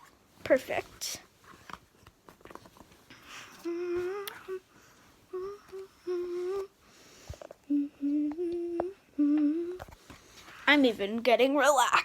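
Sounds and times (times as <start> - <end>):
person humming: 3.6 - 4.7, 5.3 - 6.8, 7.6 - 10.0.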